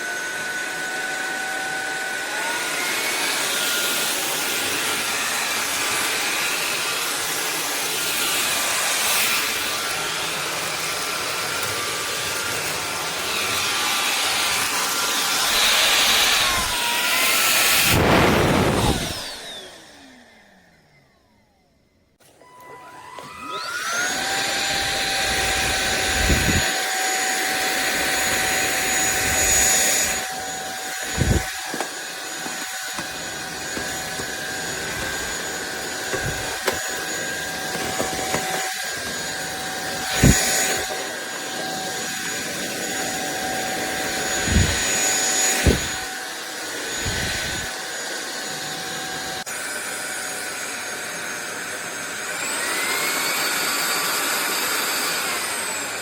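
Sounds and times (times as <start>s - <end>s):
vacuum cleaner motor whine: 0.0s - 56.0s
low thumps of vacuum head: 28.2s - 41.0s, 44.1s - 46.1s.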